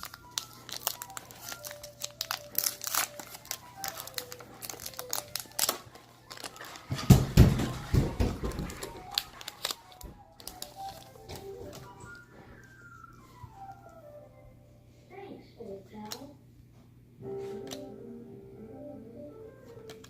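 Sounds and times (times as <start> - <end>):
foil wrappers crinkling and tearing: 0.0 - 13.8
faint music: 0.0 - 20.0.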